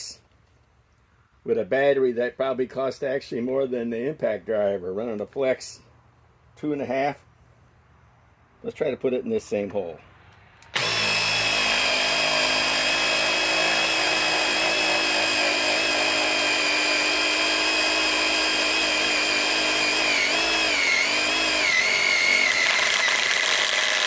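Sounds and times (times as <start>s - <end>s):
impact driver motor whine: 10.6s - 24.0s.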